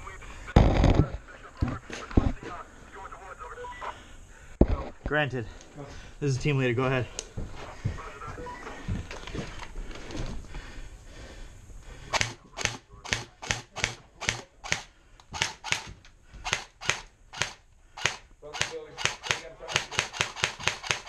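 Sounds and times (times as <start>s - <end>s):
faint rustling of movement: 0.0s - 12.2s
airsoft gun shots: 12.1s - 21.0s.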